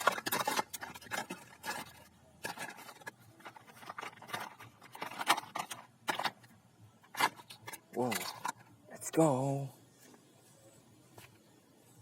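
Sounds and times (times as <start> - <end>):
plastic toy packaging clicks: 0.0 - 8.7.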